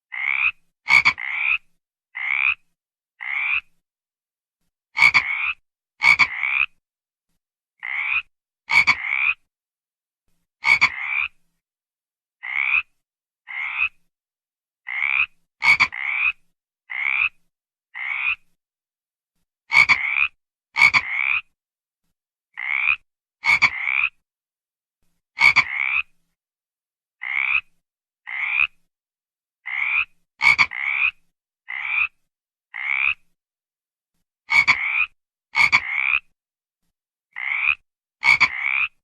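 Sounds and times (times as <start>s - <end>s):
frog croaking: 0.1s - 3.7s, 5.0s - 6.8s, 7.8s - 9.5s, 10.6s - 11.4s, 12.4s - 14.0s, 14.8s - 18.4s, 19.7s - 21.5s, 22.6s - 24.2s, 25.4s - 26.1s, 27.2s - 27.7s, 28.3s - 28.8s, 29.6s - 33.2s, 34.5s - 36.3s, 37.3s - 39.0s.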